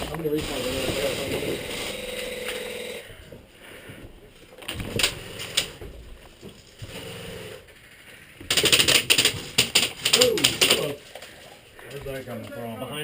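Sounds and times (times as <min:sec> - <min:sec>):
rapid full-auto airsoft fire: 0:08.5 - 0:11.0.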